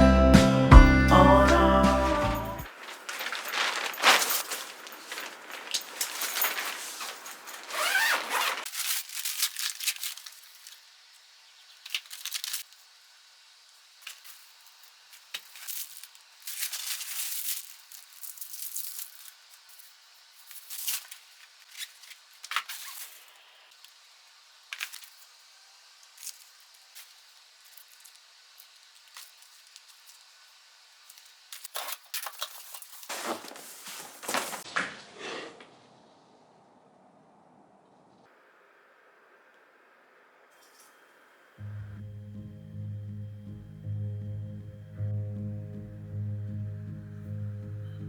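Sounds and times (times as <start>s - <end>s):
rustling and crinkling: 1.9s - 10.9s, 11.7s - 12.9s, 14.0s - 23.3s, 31.0s - 35.7s.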